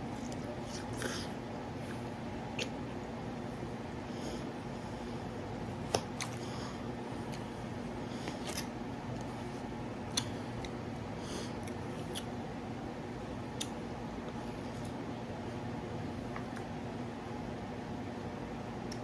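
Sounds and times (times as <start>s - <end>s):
steady low hum: 0.0s - 19.0s
quiet chewing: 0.2s - 2.9s, 5.8s - 9.5s, 10.1s - 12.4s, 13.5s - 15.0s
wet mouth clicks: 2.6s - 2.8s.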